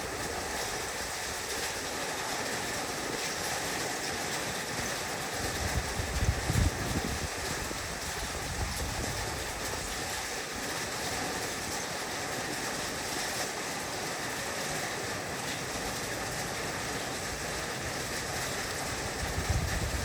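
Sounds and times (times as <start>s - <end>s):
heavy rain on a roof: 0.0s - 20.0s.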